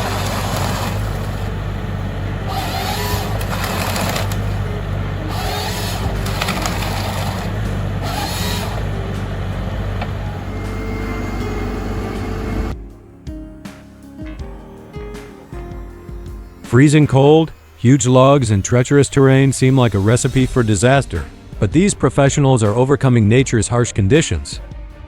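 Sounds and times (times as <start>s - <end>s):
wood being cut or split: 0.0s - 12.7s
diesel wood-cutting machine running: 0.0s - 12.8s.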